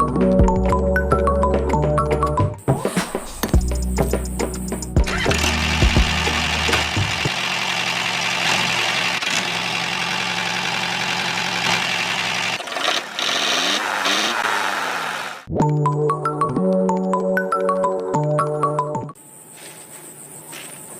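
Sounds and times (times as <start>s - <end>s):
small motor running: 5.0s - 15.5s.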